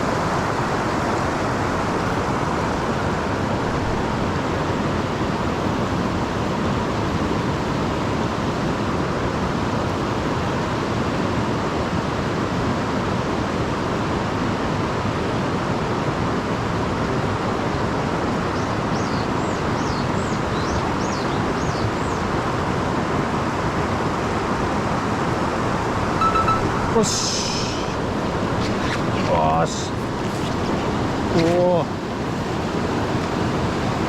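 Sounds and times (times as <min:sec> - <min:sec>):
river water rushing: 0:00.0 - 0:34.0
bird chirping: 0:26.2 - 0:31.6.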